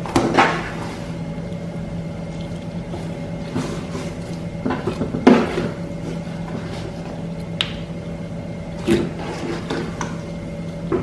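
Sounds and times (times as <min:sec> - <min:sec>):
steady low hum: 0:00.0 - 0:11.0
slime squelching: 0:00.1 - 0:10.2.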